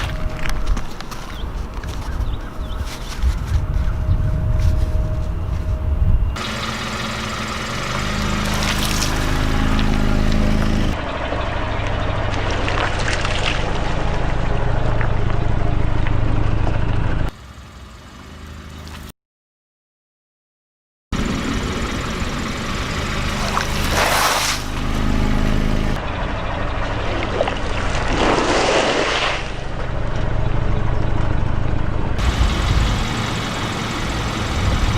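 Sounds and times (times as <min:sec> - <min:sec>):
car engine humming: 0:00.0 - 0:19.1, 0:21.2 - 0:28.0, 0:29.6 - 0:34.9
tyre crushing foam crackles: 0:23.4 - 0:24.7.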